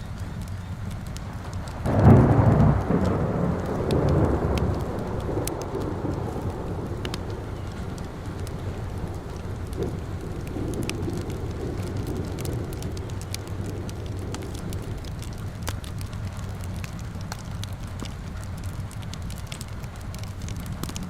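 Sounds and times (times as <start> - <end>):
fireplace fire crackling: 0.0 - 21.0
rain falling: 0.0 - 21.0
steady low rumble: 0.0 - 21.0.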